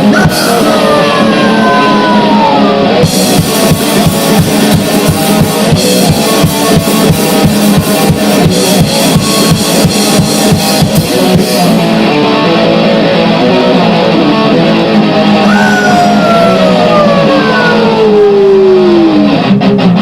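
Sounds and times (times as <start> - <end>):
high downward gliding tone: 0.0 - 6.4, 15.4 - 19.5
distorted electric guitar: 0.0 - 20.0
drum kit hitting hard: 3.0 - 12.0.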